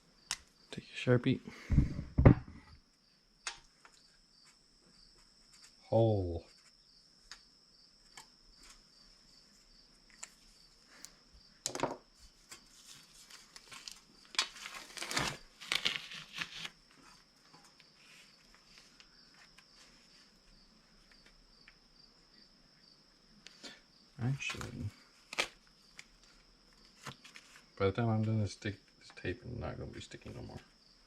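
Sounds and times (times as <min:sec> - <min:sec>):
cricket trill: 0:00.0 - 0:31.0
tape pulled and torn: 0:12.5 - 0:16.9, 0:24.4 - 0:27.6.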